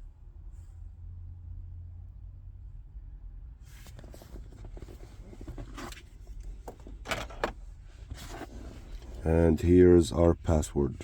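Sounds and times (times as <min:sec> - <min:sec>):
soft rustling: 0:03.6 - 0:09.4.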